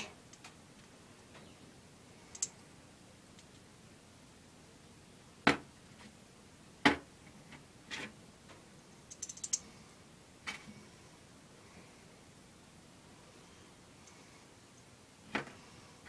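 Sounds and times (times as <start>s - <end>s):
small metal parts knocking: 9.1s - 9.6s.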